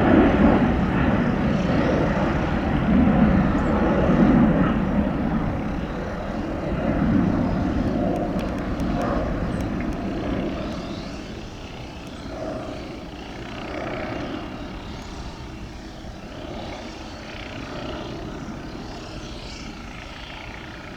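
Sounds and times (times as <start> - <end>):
jet engine rumble: 0.0 - 16.7.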